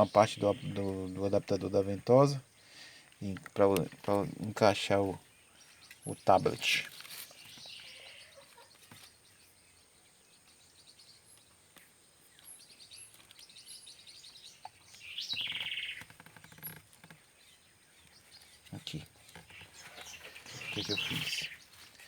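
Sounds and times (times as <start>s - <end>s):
small birds chirping: 0.0s - 22.0s
fast bird trill: 19.5s - 22.0s.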